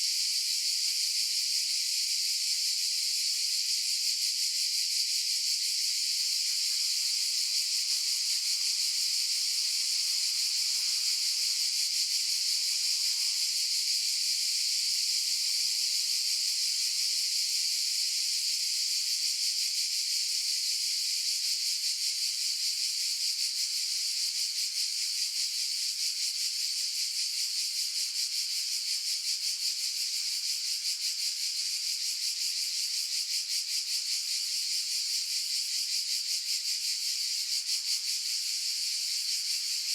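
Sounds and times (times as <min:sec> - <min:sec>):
cicadas buzzing: 0:05.9 - 0:17.4.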